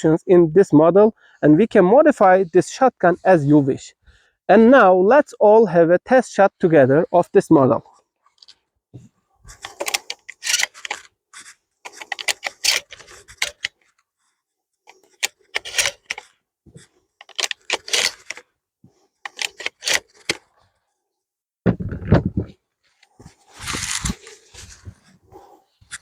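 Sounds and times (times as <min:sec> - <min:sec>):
shotgun metallic clicking and rattling: 0:09.5 - 0:13.8, 0:14.9 - 0:16.3, 0:17.2 - 0:18.5, 0:19.2 - 0:20.5.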